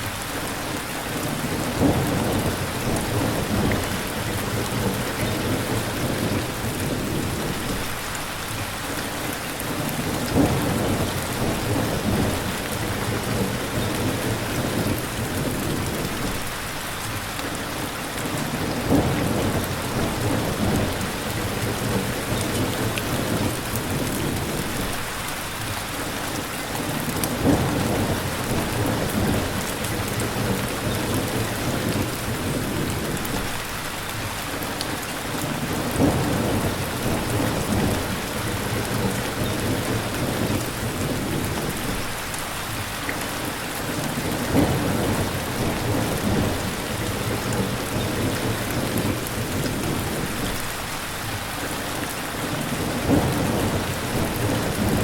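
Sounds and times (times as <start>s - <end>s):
steady rain falling: 0.0s - 55.0s
thunder rumbling: 18.6s - 25.0s, 35.6s - 42.2s, 44.2s - 50.6s, 52.8s - 55.0s.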